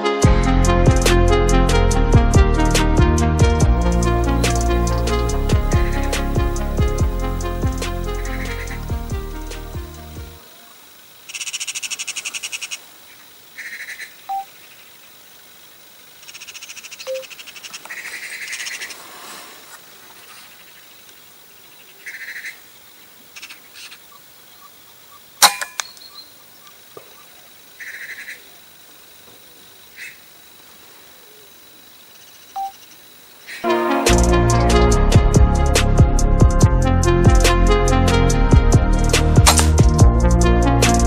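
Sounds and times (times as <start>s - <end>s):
background music: 0.0s - 10.4s, 33.6s - 41.0s
magpies chattering: 3.9s - 15.0s, 16.2s - 19.1s, 19.7s - 28.6s
air rifle shot: 39.4s - 39.8s.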